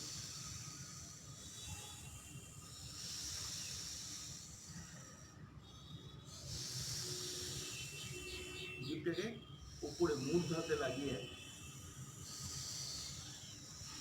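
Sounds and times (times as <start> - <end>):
hissing breaths: 0.0 - 8.6, 9.2 - 14.0.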